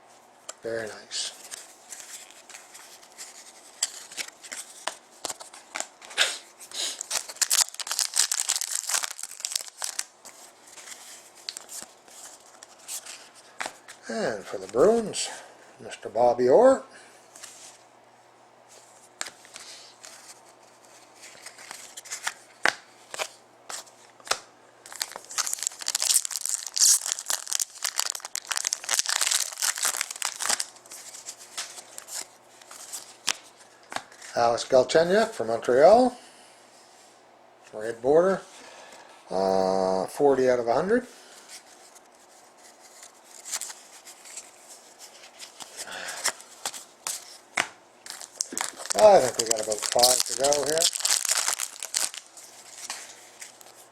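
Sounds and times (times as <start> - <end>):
trading cards rustling: 1.3 - 6.2, 6.8 - 15.0, 19.2 - 34.3, 41.5 - 53.9
foil wrapper crinkling and tearing: 6.7 - 10.2, 24.9 - 33.4, 42.9 - 47.4, 48.0 - 53.9.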